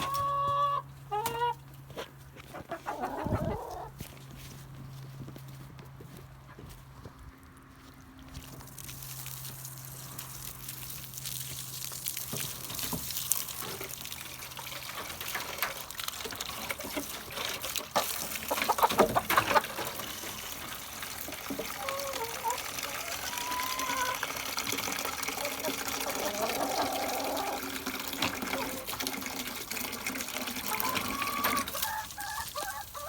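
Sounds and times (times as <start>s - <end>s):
chickens clucking: 0.0s - 4.1s, 16.7s - 33.0s
water running: 20.4s - 31.8s.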